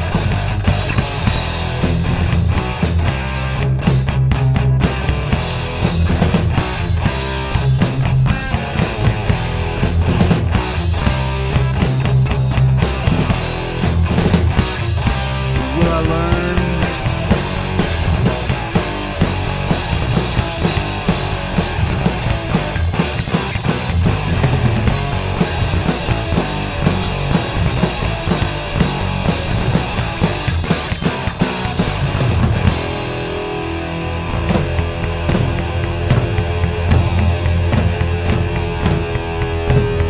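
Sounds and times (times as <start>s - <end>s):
instrumental metal band: 0.0s - 40.0s
bending guitar lick: 13.6s - 22.5s.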